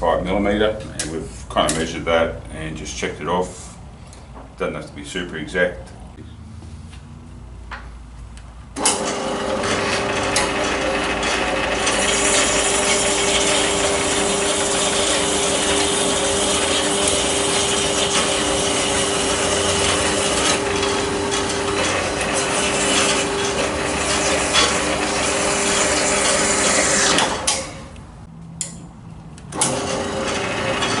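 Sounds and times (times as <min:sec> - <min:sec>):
power saw humming: 0:08.8 - 0:27.9, 0:29.5 - 0:31.0.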